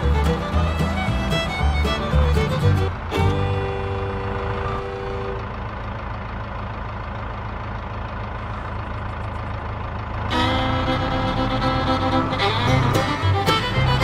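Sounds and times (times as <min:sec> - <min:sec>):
fiddle music: 0:00.0 - 0:05.8, 0:10.2 - 0:14.0
engine rumble at idle: 0:00.0 - 0:14.0.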